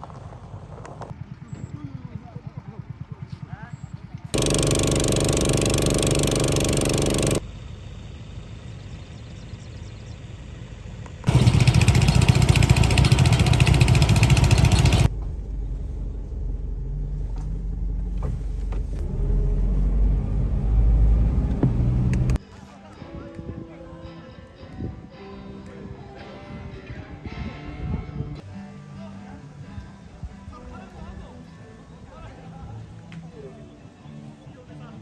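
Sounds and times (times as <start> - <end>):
engine running: 4.4 - 22.4.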